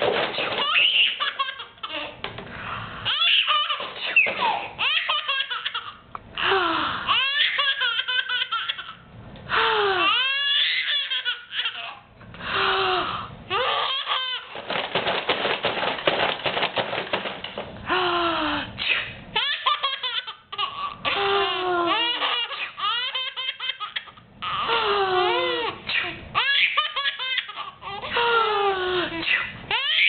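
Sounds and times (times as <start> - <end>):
baby laughing: 0.2 - 2.2, 3.0 - 9.0, 9.6 - 12.0, 13.0 - 14.5, 18.8 - 30.0.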